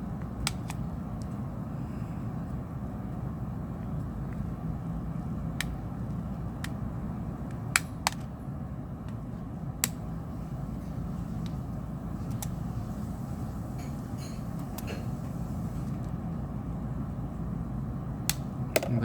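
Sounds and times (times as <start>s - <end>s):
low background hum: 0.0s - 19.0s.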